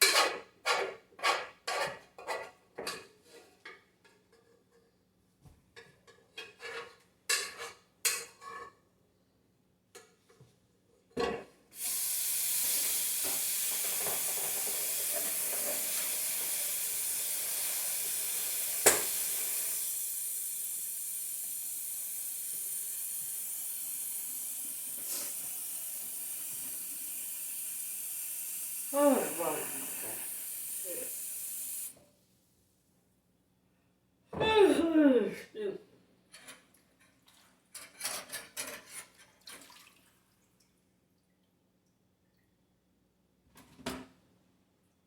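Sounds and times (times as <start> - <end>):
dishes and cutlery clinking: 0.0 - 4.6, 5.8 - 8.8
steady hiss: 11.8 - 32.0.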